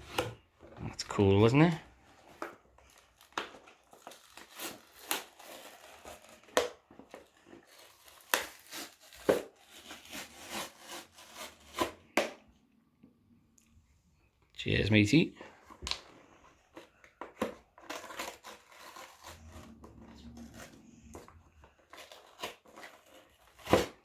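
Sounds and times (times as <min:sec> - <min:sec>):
packaging rustling and crinkling: 0:00.0 - 0:12.0, 0:15.5 - 0:24.0.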